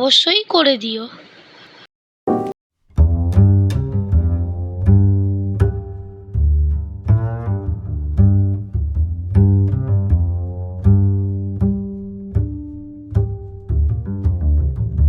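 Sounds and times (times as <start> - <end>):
low pitched struck notes: 2.3 - 4.2.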